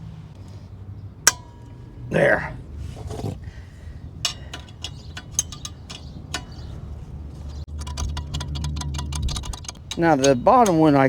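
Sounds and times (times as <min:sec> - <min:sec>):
ratchet clicking: 0:04.2 - 0:06.8, 0:07.4 - 0:11.0
metal tools clinking: 0:04.2 - 0:11.0.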